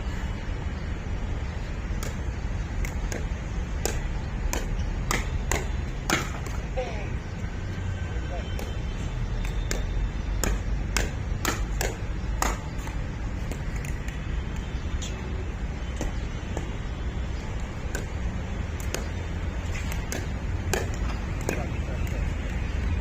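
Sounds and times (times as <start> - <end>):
paddles hitting plastic ball: 1.9 - 6.8, 8.5 - 14.7, 17.5 - 22.8.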